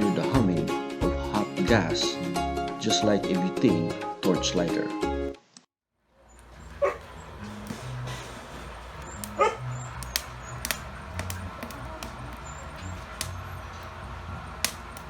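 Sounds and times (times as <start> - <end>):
firewood crackling: 6.0 - 15.0
stove burning with low hum: 6.1 - 15.0
dog yelping: 6.3 - 13.9.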